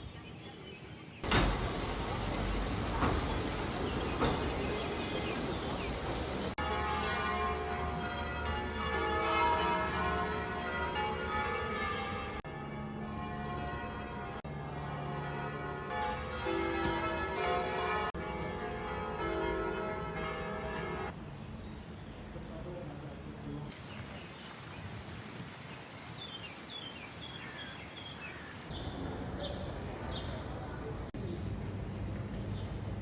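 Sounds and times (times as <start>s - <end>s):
broad noise: 1.2s - 6.6s
church bells ringing: 1.2s - 21.2s.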